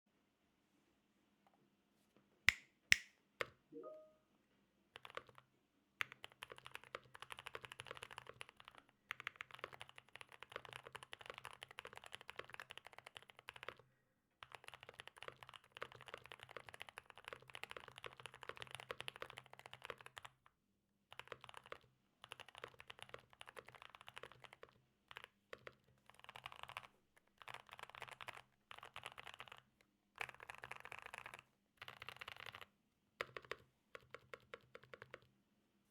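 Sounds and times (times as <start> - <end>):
mechanical keyboard typing: 5.0 - 5.4, 6.0 - 13.8, 14.4 - 20.4, 21.1 - 35.3.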